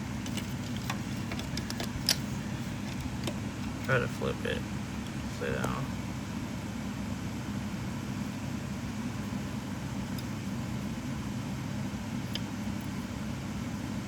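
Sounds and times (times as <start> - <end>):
low mechanical machinery hum: 0.0 - 14.0.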